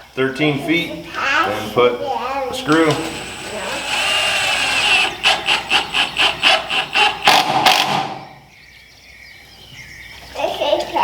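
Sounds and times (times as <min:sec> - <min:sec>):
power driver driving screw into wood: 0:02.8 - 0:08.4.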